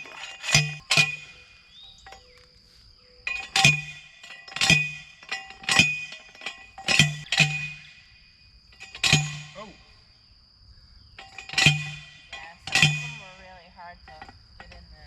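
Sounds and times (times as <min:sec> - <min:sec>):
post driver clanging on metal: 0:00.0 - 0:02.5, 0:03.2 - 0:10.0, 0:11.2 - 0:15.0.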